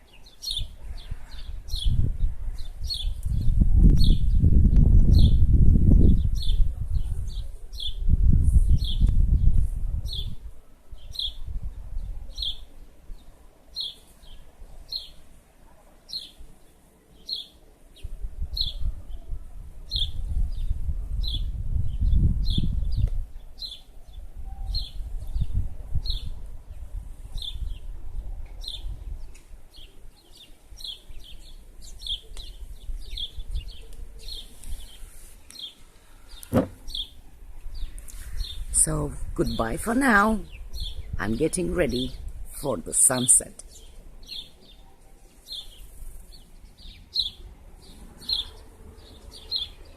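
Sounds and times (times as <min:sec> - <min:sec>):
small bird chirping: 0:29.7 - 0:42.1, 0:43.6 - 0:48.6.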